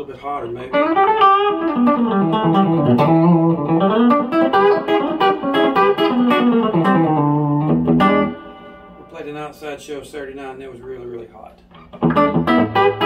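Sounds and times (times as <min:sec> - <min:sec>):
electric guitar country lick: 0:00.6 - 0:09.1, 0:11.7 - 0:13.0.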